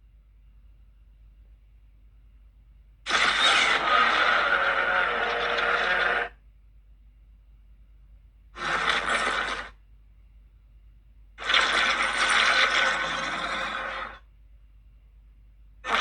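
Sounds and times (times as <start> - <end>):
rasping monster roars: 3.1 - 6.4, 11.4 - 14.2.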